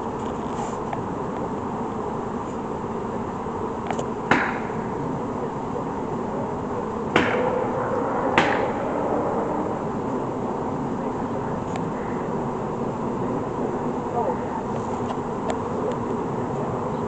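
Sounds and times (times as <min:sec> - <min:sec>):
outdoor background rumble: 0:00.0 - 0:17.0
sharp ringing knocks: 0:07.1 - 0:10.0.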